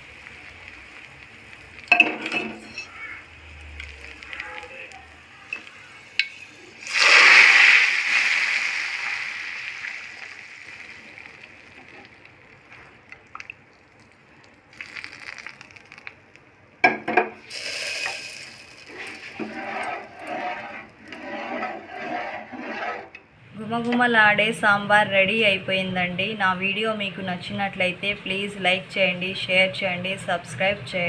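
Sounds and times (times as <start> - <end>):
hot oil sizzling: 0.0 - 21.9.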